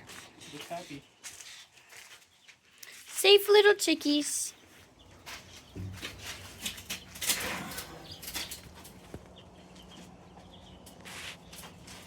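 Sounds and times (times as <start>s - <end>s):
chicks peeping: 4.4s - 12.0s.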